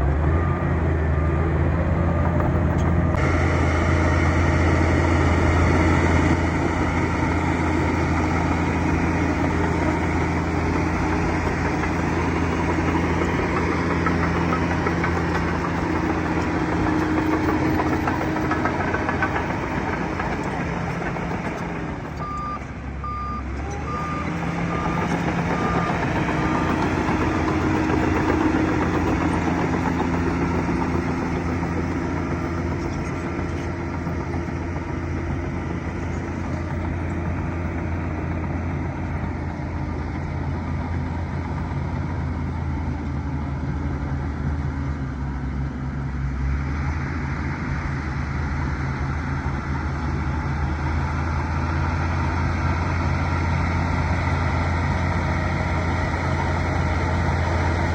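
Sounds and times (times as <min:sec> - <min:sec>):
bulldozer diesel engine running: 0:00.0 - 0:57.9
reversing alarm beeping: 0:22.2 - 0:28.1.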